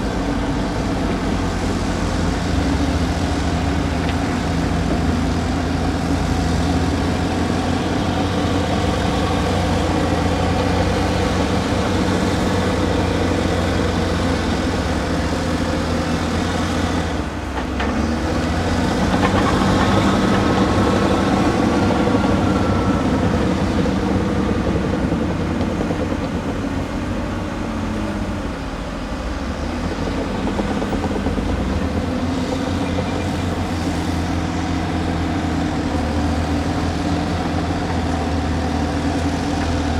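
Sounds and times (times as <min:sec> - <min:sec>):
digging and moving dirt: 0:00.0 - 0:28.2
excavator diesel engine running: 0:00.0 - 0:39.9.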